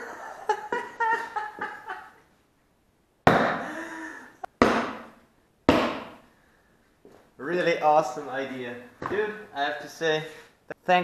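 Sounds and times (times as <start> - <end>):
tomahawk hitting wooden target: 3.3 - 3.7, 4.6 - 6.3.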